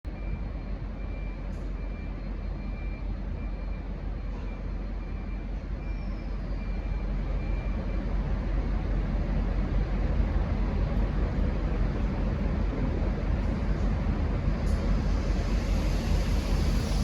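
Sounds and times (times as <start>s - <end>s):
faint high beep: 0.1s - 7.9s
diesel locomotive idling: 0.1s - 17.0s.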